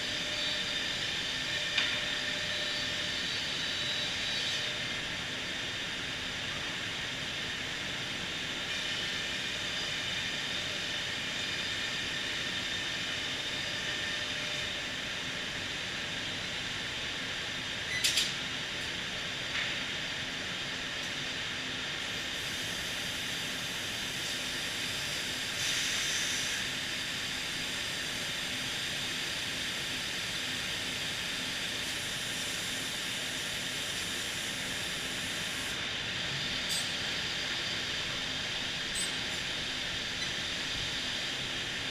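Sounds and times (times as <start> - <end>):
sharp burst of hiss: 25.6 - 26.7.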